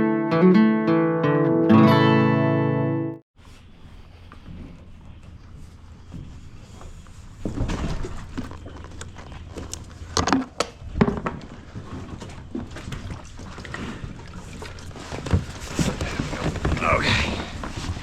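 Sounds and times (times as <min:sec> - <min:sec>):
water around kayak: 0:08.1 - 0:18.0.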